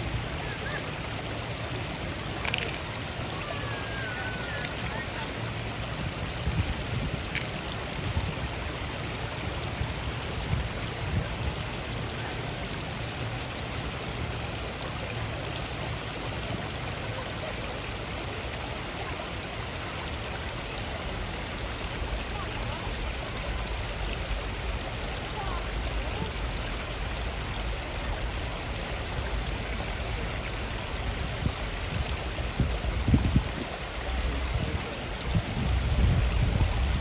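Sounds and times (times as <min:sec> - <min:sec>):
water rushing: 0:00.0 - 0:37.0.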